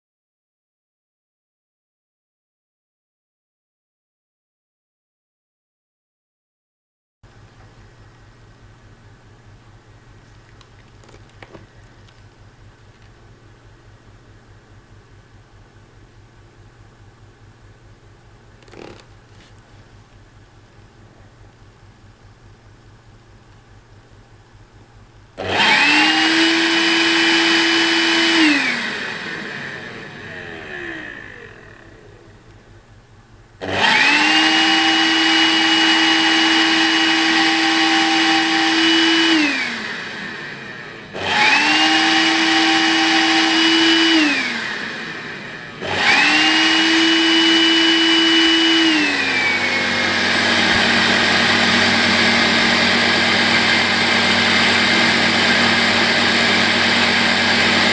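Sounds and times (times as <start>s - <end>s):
vacuum motor whining: 18.6s - 19.1s, 25.4s - 32.8s, 33.6s - 57.9s.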